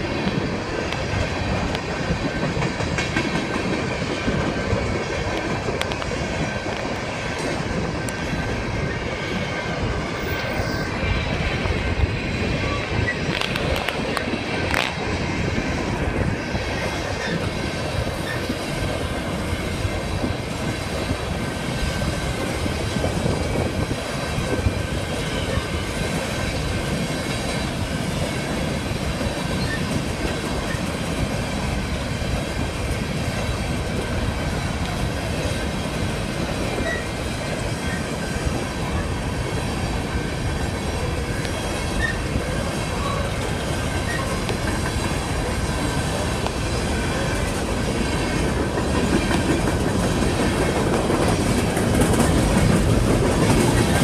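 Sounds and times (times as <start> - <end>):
train cars rattling on rails: 0.0 - 54.0
faint high wheel squeal: 10.2 - 11.0, 29.5 - 30.0, 36.8 - 37.2, 41.7 - 44.5.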